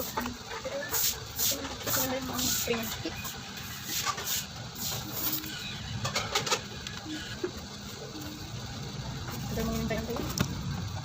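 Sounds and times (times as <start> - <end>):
bird cooing: 5.0 - 8.5.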